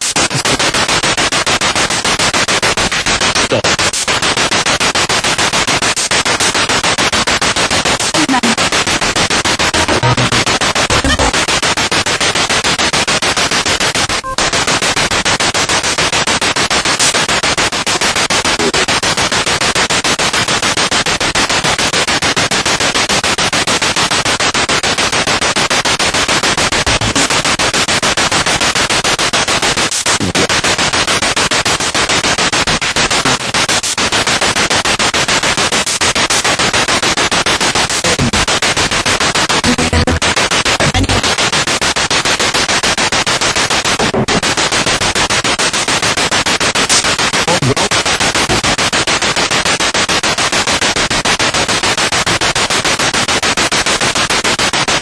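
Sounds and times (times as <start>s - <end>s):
broadcast sound fragments: 0.0s - 19.4s, 26.1s - 50.5s
stuttering radio static: 0.0s - 55.0s.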